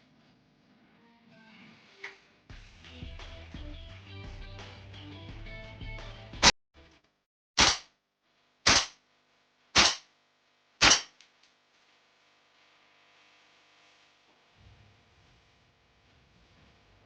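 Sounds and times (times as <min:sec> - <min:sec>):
airsoft rifle shots: 0:07.6 - 0:07.9, 0:08.7 - 0:09.0, 0:09.8 - 0:10.1, 0:10.8 - 0:11.2.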